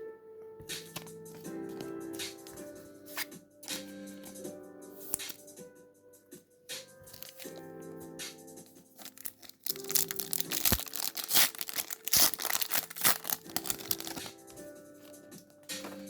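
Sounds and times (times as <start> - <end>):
soft background music: 0.0 - 16.0
wrapper crinkling and tearing: 7.1 - 7.6, 9.0 - 14.4.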